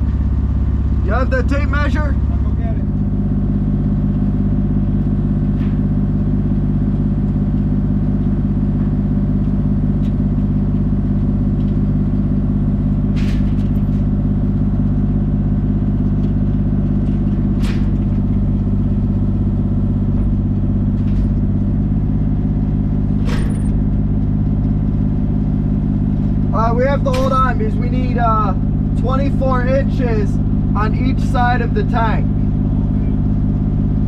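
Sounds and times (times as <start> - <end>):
diesel engine idling: 0.0 - 34.0
short metallic clanks: 17.0 - 18.4, 23.2 - 24.0, 27.0 - 27.7.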